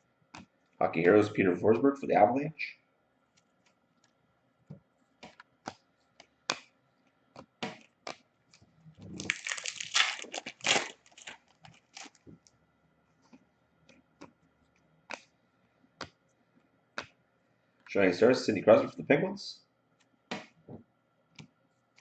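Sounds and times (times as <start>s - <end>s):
foil wrapper crinkling and tearing: 9.1s - 12.3s.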